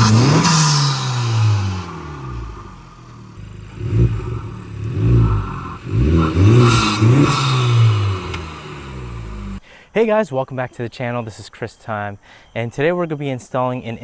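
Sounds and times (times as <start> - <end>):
car engine revving: 0.0 - 9.6.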